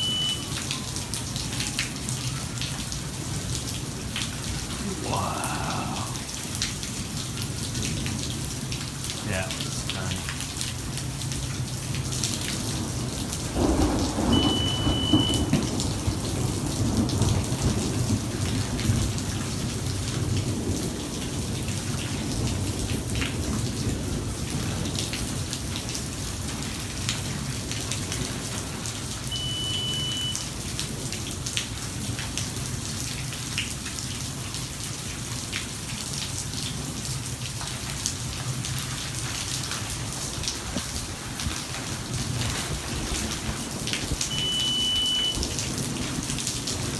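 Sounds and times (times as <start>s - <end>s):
short high beeps: 0.0s - 0.6s, 14.4s - 15.4s, 29.3s - 30.4s, 44.3s - 45.4s
heavy rain: 0.0s - 46.9s
thunder clap and rumble: 12.3s - 29.0s, 40.0s - 44.4s, 45.2s - 46.9s.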